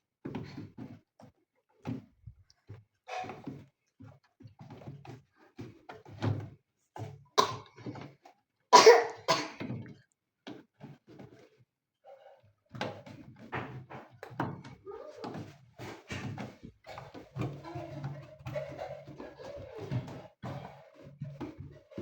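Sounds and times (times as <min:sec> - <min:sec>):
thunks and rubbing of rubber gasket: 0:00.2 - 0:08.4, 0:12.7 - 0:22.0.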